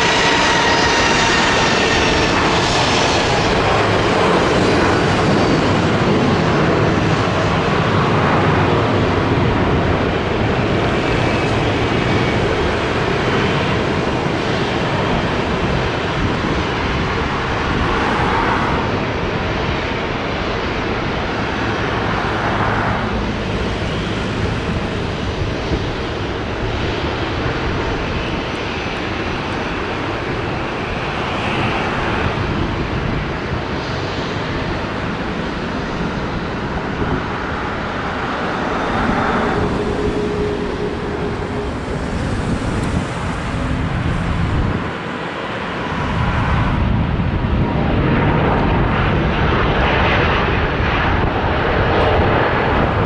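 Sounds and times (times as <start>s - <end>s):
jet engines roaring: 0.0s - 53.0s.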